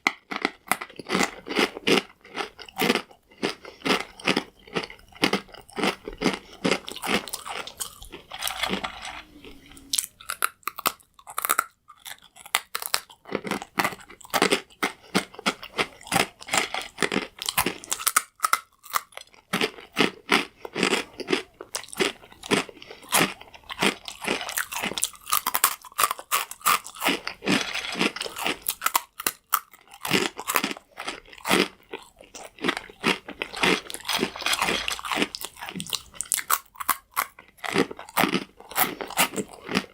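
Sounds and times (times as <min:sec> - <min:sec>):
croutons crunching being chewed: 0:00.0 - 0:39.9.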